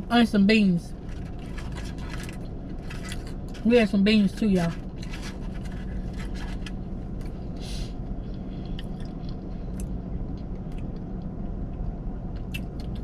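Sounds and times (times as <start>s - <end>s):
steady low hum: 0.0s - 13.0s
chewing crunches: 1.0s - 3.6s.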